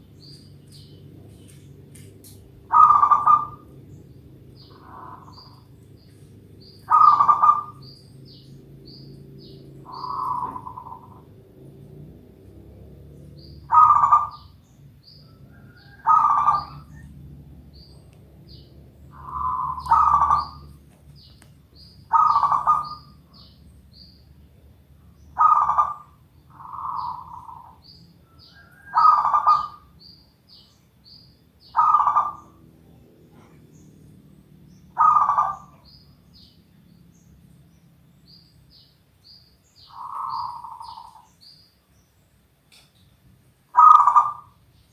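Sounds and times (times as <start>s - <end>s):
dove cooing: 0.6s - 23.6s, 25.3s - 30.0s, 31.6s - 33.9s, 34.9s - 36.5s, 39.8s - 41.4s, 43.7s - 44.7s.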